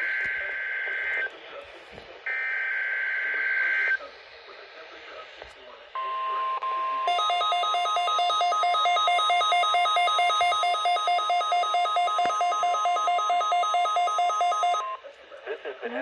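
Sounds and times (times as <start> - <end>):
steady warning alarm tone: 7.1 - 15.0.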